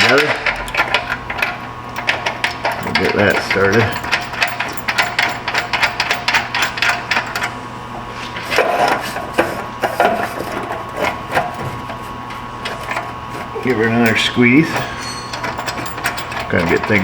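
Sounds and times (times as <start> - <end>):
hand ratchet clicking: 0.0 - 7.5, 13.6 - 17.0.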